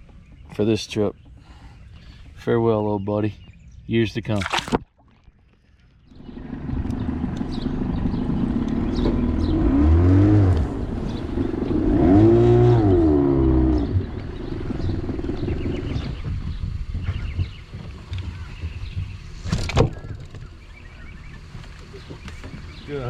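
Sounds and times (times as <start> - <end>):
engine revving: 6.1 - 17.6.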